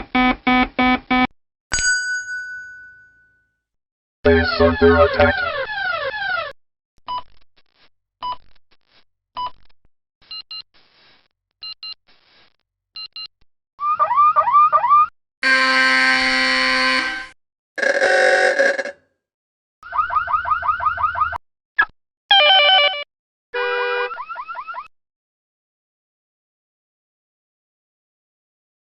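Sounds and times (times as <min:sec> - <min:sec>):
harsh buzzer blasts: 0:15.4 - 0:19.0.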